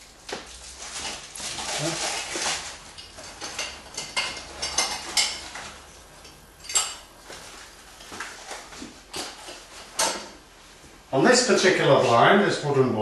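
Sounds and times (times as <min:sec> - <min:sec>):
small hardware clinking and rattling: 0:02.4 - 0:07.1.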